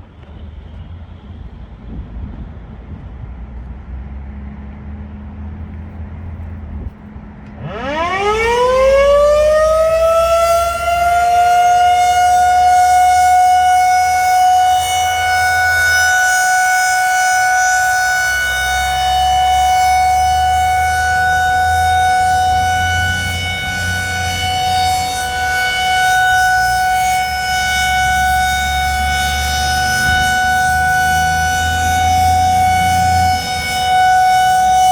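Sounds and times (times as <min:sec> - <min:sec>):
warning siren wailing: 0:07.4 - 0:34.9.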